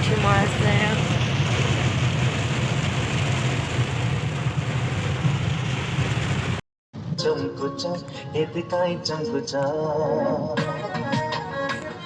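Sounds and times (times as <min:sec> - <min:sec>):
vehicle driving in heavy rain: 0:00.0 - 0:06.6.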